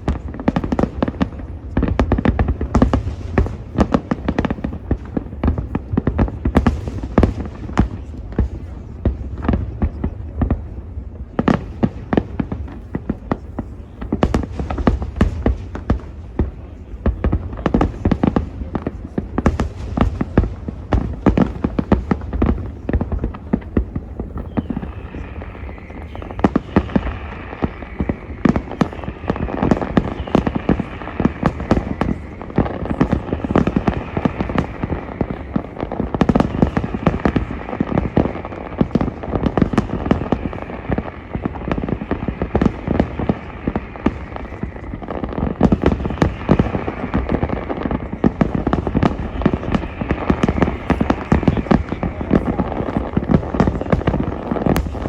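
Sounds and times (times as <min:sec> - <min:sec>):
fireworks bangs and booms: 0:00.0 - 0:55.0
fireworks crackling: 0:00.0 - 0:55.0.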